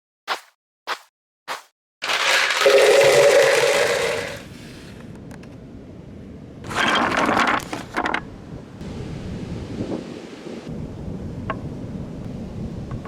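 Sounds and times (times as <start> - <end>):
marbles clattering through wooden blocks: 2.0 - 4.4
wind: 2.0 - 13.0.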